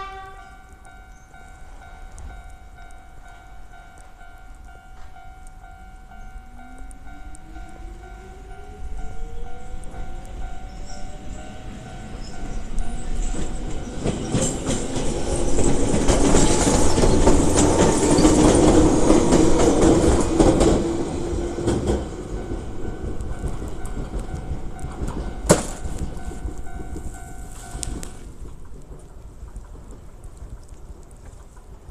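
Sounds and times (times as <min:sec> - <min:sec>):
level crossing warning bell: 0:00.0 - 0:28.3
train passing: 0:00.0 - 0:31.9.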